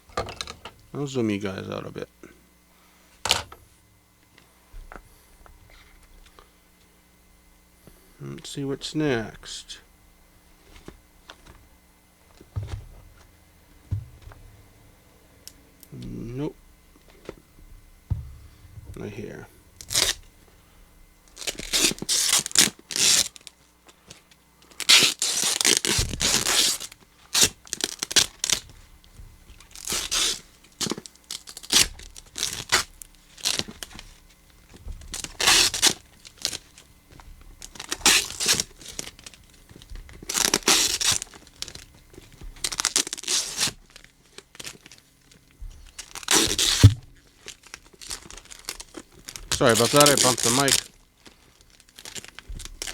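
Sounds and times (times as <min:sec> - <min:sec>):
microphone bump thump: 0:12.4 - 0:14.6, 0:17.6 - 0:19.8, 0:46.8 - 0:47.2
duct tape ripping: 0:19.8 - 0:20.3, 0:21.3 - 0:23.6, 0:24.7 - 0:28.8, 0:29.5 - 0:45.1, 0:45.7 - 0:52.9.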